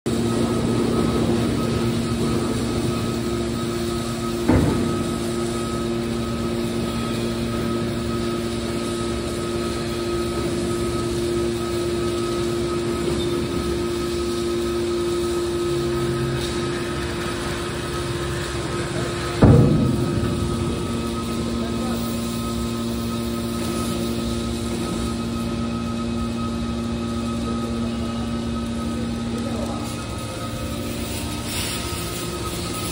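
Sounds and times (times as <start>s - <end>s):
heavy machinery humming: 0.1s - 32.9s.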